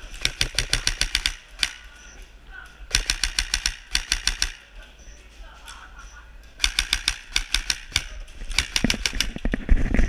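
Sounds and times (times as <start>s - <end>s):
airsoft rifle firing bursts: 0.0s - 2.0s, 2.9s - 4.8s, 6.6s - 9.9s.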